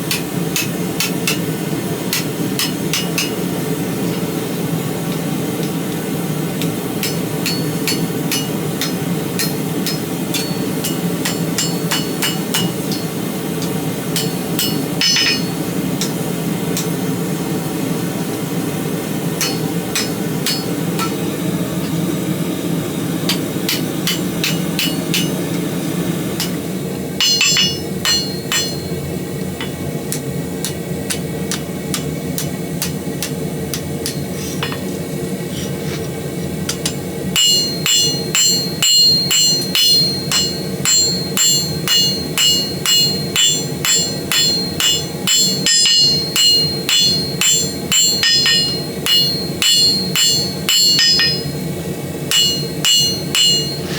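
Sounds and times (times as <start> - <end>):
hammer blows on hot steel: 26.4 - 34.9, 36.7 - 53.9.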